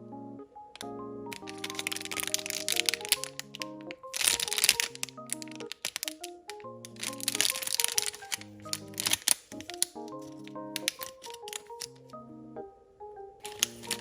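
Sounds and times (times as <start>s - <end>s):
background music melody: 0.0s - 14.0s
plastic packaging crinkling: 1.3s - 10.2s, 10.8s - 12.0s, 13.5s - 14.0s.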